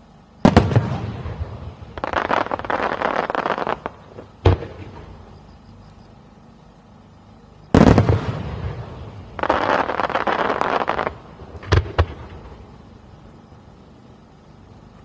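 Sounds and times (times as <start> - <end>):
firework crackle of small pops: 0.0 - 6.2, 7.7 - 13.6
sharp firework bangs: 0.4 - 5.2, 7.7 - 12.6.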